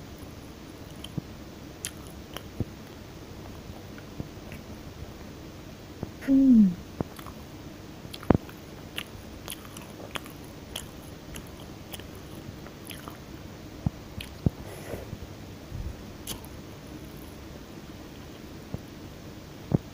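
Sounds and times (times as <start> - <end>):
chewing and crunching: 0.2 - 1.2, 1.8 - 4.7, 7.0 - 7.5, 8.1 - 13.3, 14.2 - 14.6, 16.2 - 17.4.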